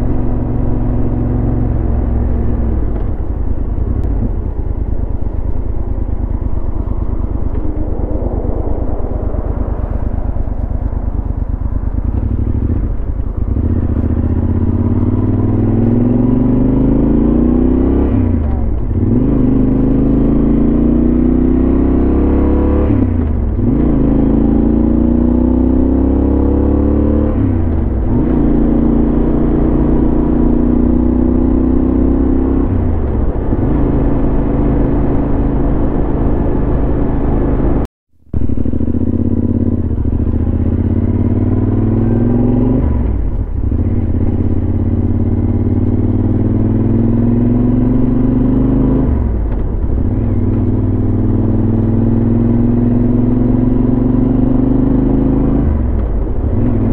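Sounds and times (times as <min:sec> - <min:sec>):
motorcycle engine upshifting: 0:27.3 - 0:56.9.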